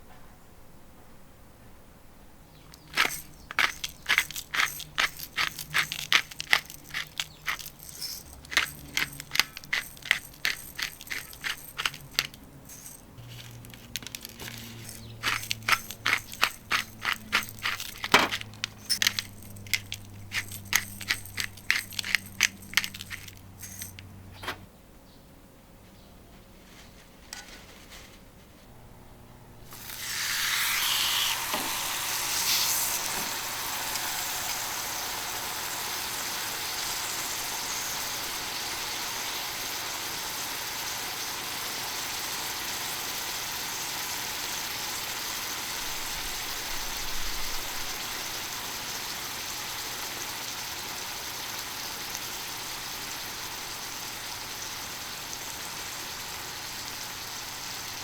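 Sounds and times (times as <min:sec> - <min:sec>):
steak sizzling on a griddle: 0:29.7 - 0:58.0.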